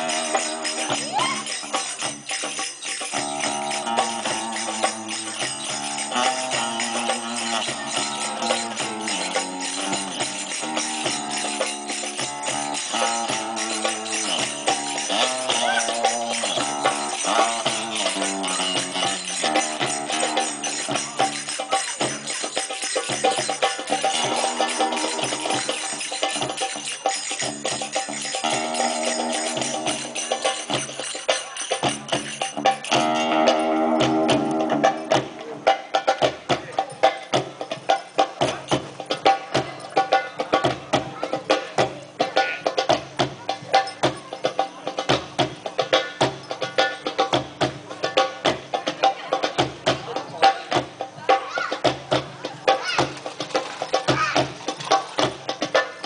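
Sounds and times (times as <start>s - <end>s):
sustained melodic notes: 0.0s - 35.6s
percussion with jingling: 0.0s - 56.0s.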